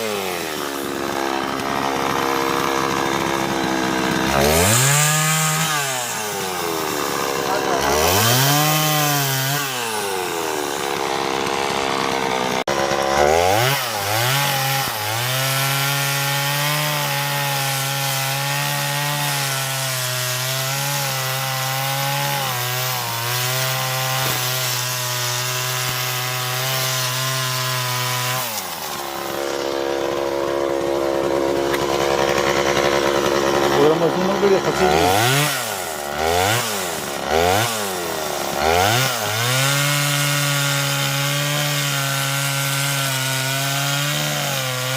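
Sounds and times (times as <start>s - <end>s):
chainsaw cutting wood: 0.0s - 44.9s.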